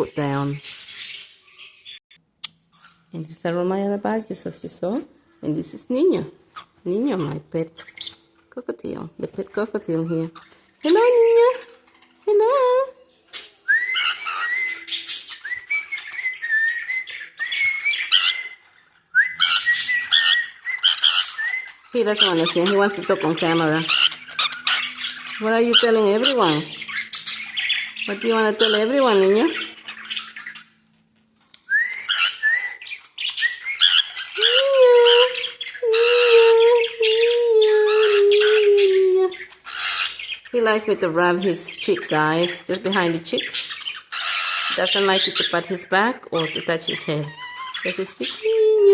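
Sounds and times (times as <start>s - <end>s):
birds squawking: 0.0s - 3.2s, 5.8s - 8.5s, 9.6s - 48.9s
cockatiel chattering: 19.4s - 30.8s, 32.0s - 36.2s, 39.4s - 40.5s, 43.4s - 45.6s.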